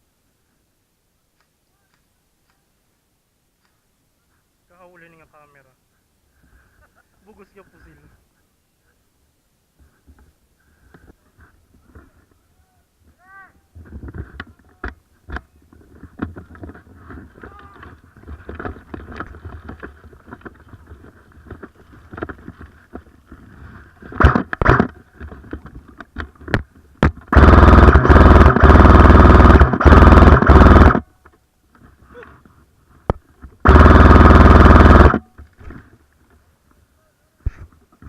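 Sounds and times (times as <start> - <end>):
airsoft gun firing bursts: 24.2 - 24.9, 27.3 - 31.0, 33.6 - 35.2.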